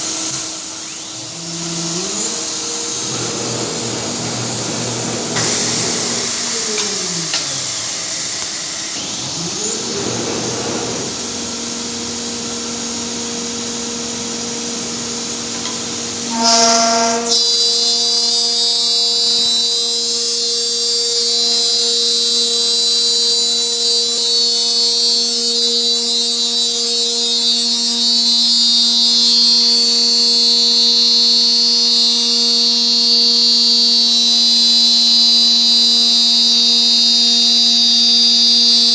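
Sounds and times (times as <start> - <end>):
router spindle whine: 0.0 - 38.9.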